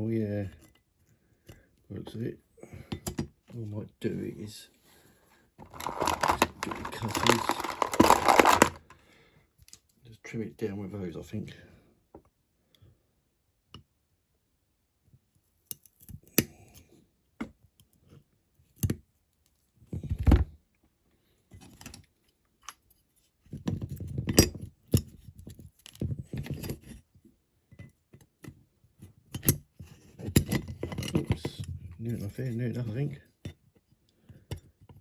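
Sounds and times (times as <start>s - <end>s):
clattering handling: 5.6s - 8.9s.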